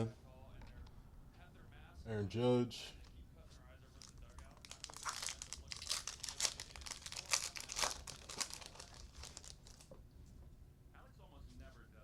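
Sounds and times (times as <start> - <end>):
cards being flipped: 4.0 - 9.9
plastic packaging crinkling: 4.0 - 9.9.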